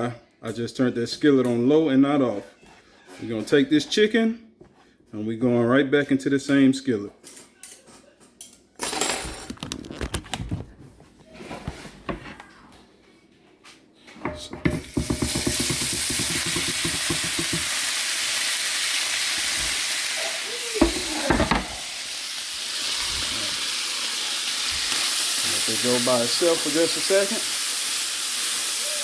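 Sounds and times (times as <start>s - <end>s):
chicken sizzling in skillet: 14.8s - 29.0s.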